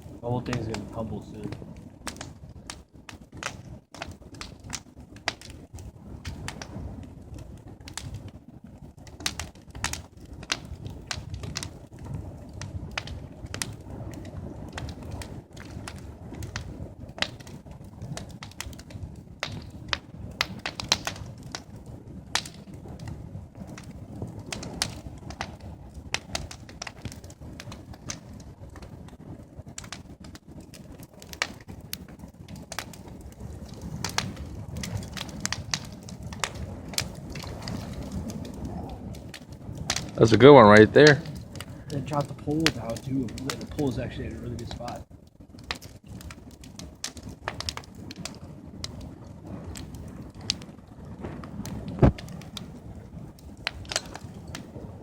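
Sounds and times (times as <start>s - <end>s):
fire crackling and popping: 0.0s - 55.0s
low rumble: 0.0s - 55.0s.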